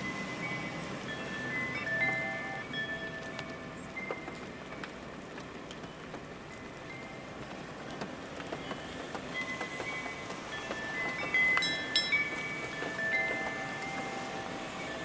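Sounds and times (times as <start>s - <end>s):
high bell-like chimes: 0.0s - 4.4s, 9.4s - 15.0s
steady rain with dripping: 0.0s - 15.0s.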